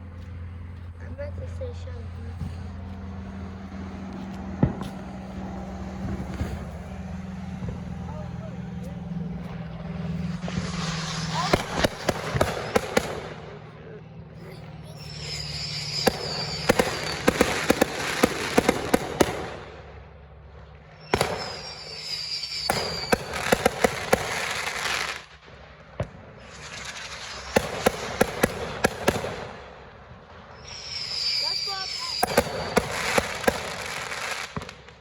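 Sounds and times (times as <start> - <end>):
fireworks crackling and banging: 0.2 - 35.0
firework whistle: 10.0 - 13.3, 14.4 - 19.3, 21.0 - 25.3, 26.4 - 29.1, 30.5 - 34.8.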